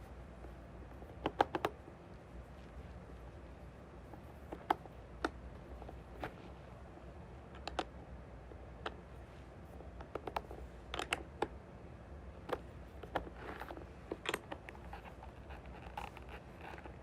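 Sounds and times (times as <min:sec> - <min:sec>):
steady low hum: 0:00.0 - 0:17.0
light clicks and taps: 0:00.4 - 0:06.5, 0:10.0 - 0:11.6.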